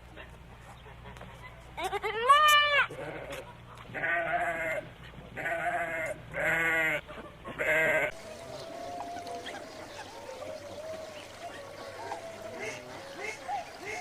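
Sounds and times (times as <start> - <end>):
sheep bleating: 4.0 - 7.0, 7.6 - 8.2
thin wavering call: 8.1 - 14.0.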